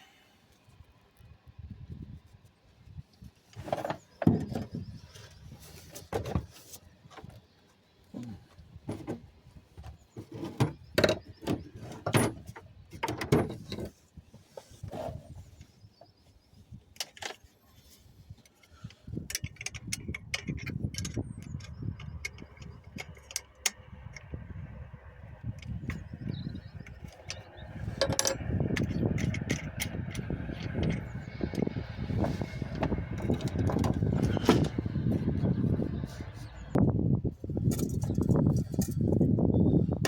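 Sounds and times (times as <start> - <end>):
low rumbling rustle: 0.5 - 40.0
tools and metal parts clattering: 9.9 - 14.0, 18.8 - 24.3, 25.6 - 35.2, 37.6 - 39.3.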